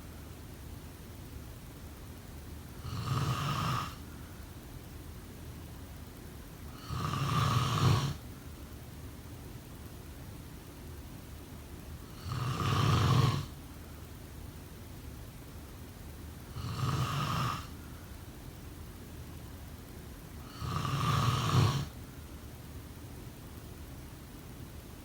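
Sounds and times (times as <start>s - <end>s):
low steady hiss: 0.0s - 25.0s
person snoring: 2.8s - 4.0s, 6.8s - 8.2s, 12.2s - 13.5s, 16.5s - 17.8s, 20.4s - 22.0s.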